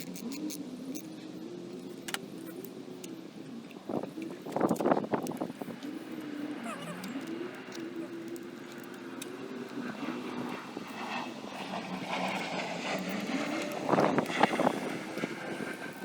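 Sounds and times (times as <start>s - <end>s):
passing vehicle engine drone: 5.6s - 16.0s.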